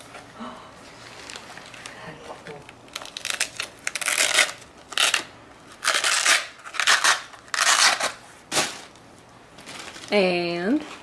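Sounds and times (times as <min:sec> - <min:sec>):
plastic packaging crinkling: 0:02.8 - 0:09.0, 0:09.6 - 0:11.0.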